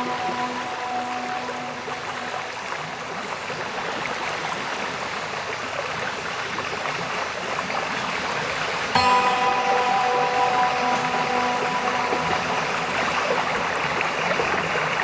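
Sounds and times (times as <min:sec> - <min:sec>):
stream water rushing: 0:00.0 - 0:05.8, 0:08.9 - 0:15.0.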